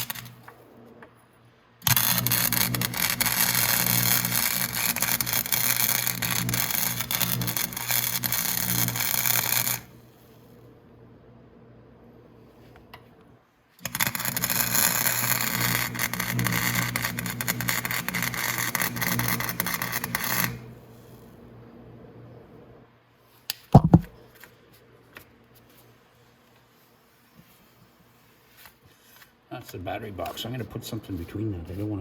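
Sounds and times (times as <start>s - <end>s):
welder arc crackling: 0.0s - 0.6s, 1.8s - 10.1s, 13.8s - 20.8s, 23.7s - 24.1s.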